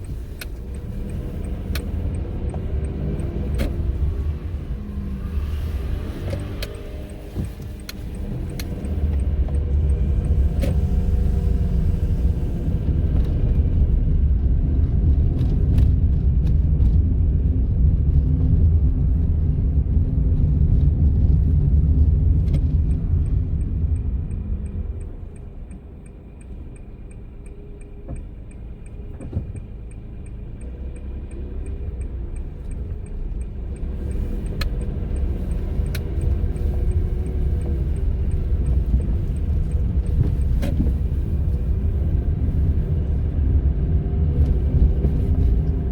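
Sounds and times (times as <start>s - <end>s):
car engine and road rumble: 0.0s - 45.9s
light regular ticking: 6.3s - 11.4s, 22.5s - 42.8s.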